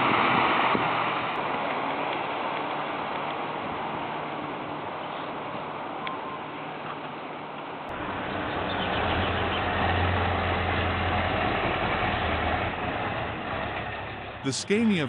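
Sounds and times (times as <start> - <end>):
heavy truck engine running: 7.9 - 15.0.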